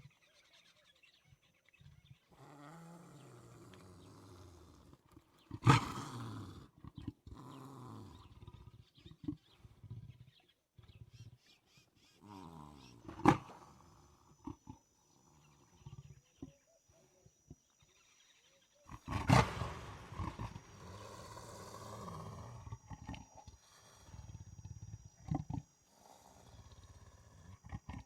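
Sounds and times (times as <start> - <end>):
animal roars and growls: 2.3 - 8.6, 18.9 - 28.0.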